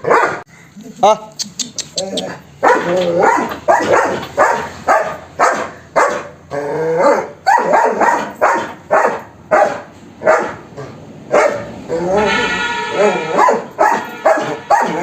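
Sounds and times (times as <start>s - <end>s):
dog barking loudly: 0.0s - 0.5s, 2.3s - 15.0s.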